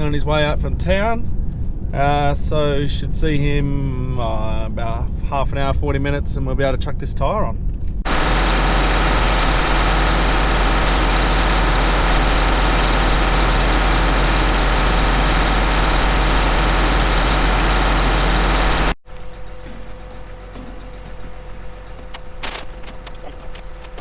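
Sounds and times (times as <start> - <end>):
farm vehicle engine running: 8.1 - 19.0.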